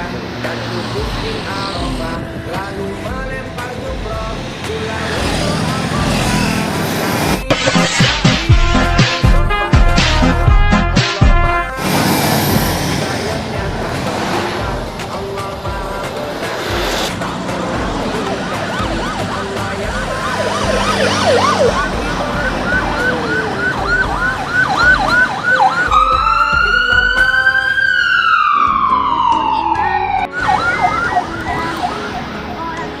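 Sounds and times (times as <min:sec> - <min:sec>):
electronic siren yelping and wailing: 0:16.6 - 0:32.6.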